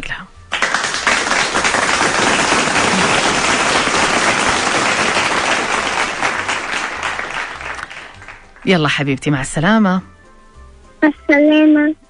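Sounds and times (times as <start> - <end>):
crowd applause: 0.5 - 8.7.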